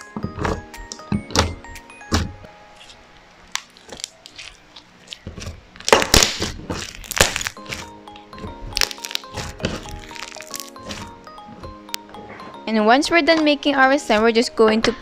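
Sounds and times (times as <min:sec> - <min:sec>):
background music: 0:00.0 - 0:03.6, 0:07.2 - 0:15.0
slime crackling and popping: 0:02.8 - 0:11.2.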